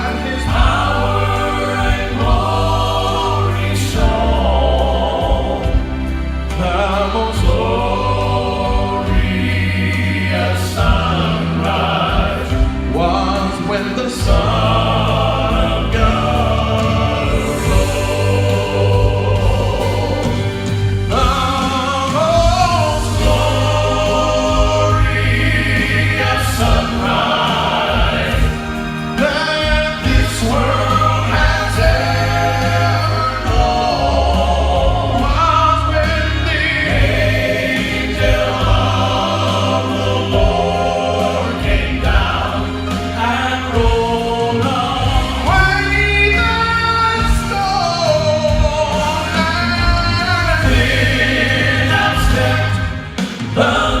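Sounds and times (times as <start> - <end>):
instrumental accompaniment with bass: 0.0 - 54.0
vocal quartet singing gospel: 0.0 - 54.0.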